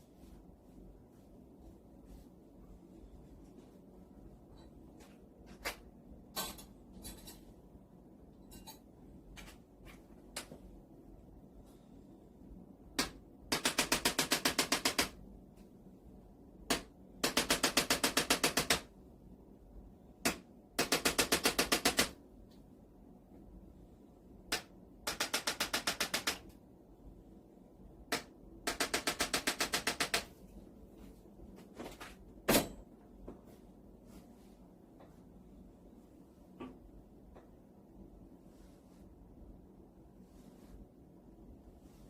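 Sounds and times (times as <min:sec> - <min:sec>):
adjusting instrument rapid taps: 0:16.7 - 0:18.8, 0:24.5 - 0:26.5.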